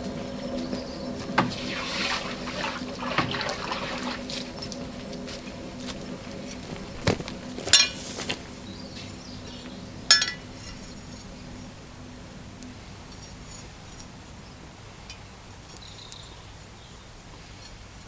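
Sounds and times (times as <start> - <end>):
steady low hum: 0.0 - 17.4
hammer clinking on steel: 10.1 - 10.5.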